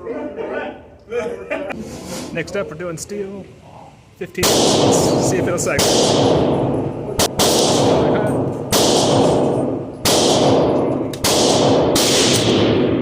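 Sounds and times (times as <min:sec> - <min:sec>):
pistol shots echoing: 0:04.4 - 0:13.0.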